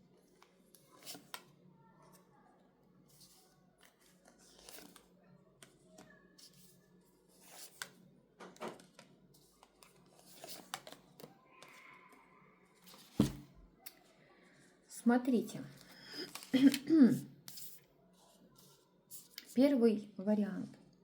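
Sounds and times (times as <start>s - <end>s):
cards rustling and sliding: 0.8s - 1.5s, 3.1s - 5.8s, 6.4s - 8.0s, 8.7s - 11.9s, 15.8s - 16.9s.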